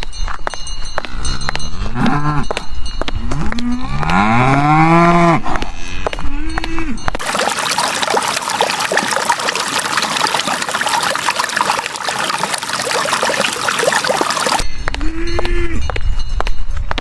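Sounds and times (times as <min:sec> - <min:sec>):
water running and trickling: 0:07.2 - 0:14.6.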